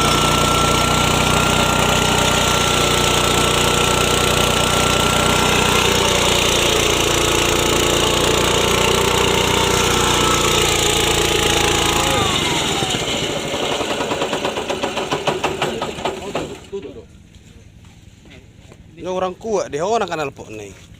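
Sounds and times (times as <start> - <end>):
machine winding down: 0.0 - 17.0
small engine running: 0.0 - 17.0.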